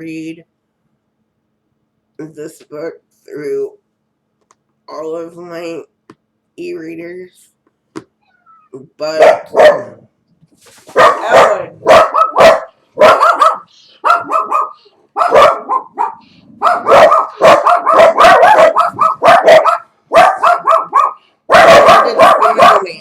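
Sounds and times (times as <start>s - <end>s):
dog barking: 9.2s - 10.1s, 10.9s - 23.0s.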